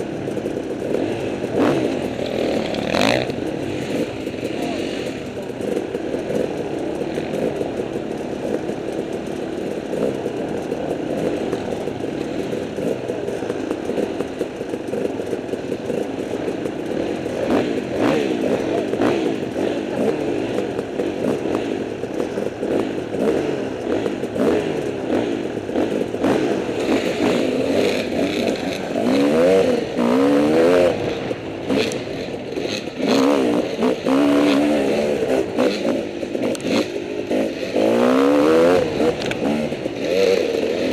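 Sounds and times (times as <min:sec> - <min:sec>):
dirt bike engines idling and revving: 0:00.0 - 0:40.9
nearby dirt bike revving sharply: 0:00.8 - 0:07.6, 0:15.9 - 0:21.8, 0:22.4 - 0:40.9.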